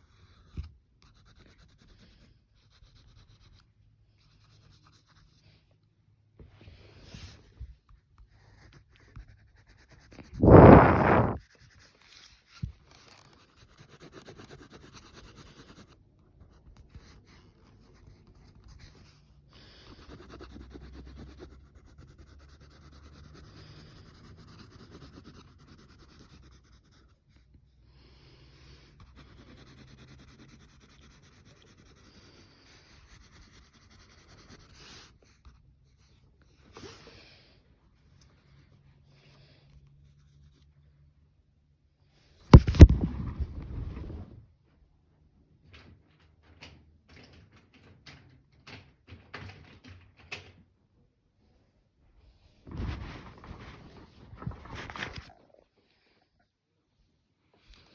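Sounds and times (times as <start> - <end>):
colouring strokes on paper: 8.1 - 16.0, 17.0 - 27.5, 28.4 - 37.2.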